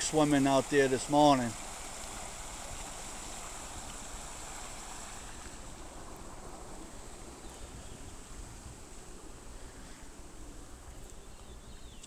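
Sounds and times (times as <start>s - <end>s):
running water rushing: 0.0s - 9.5s
wind rumble on microphone: 5.1s - 12.0s.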